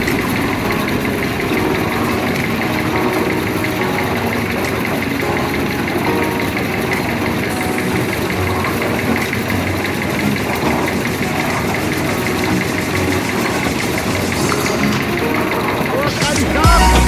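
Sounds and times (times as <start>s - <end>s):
concrete mixer engine running: 6.1s - 17.0s.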